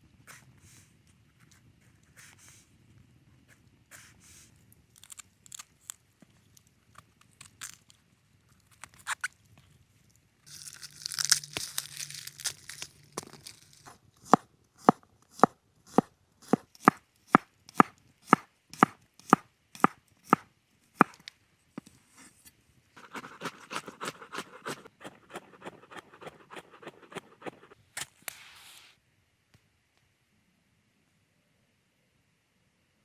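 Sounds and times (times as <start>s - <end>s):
knife chopping on cutting board: 14.2s - 17.0s, 17.8s - 20.4s, 23.0s - 27.8s
soft quick scraping: 23.0s - 29.0s.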